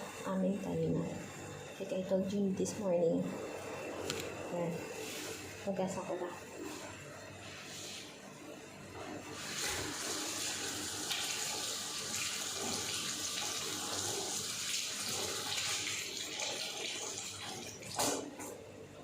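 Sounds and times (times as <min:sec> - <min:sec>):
water running from a tap: 0:09.4 - 0:18.2.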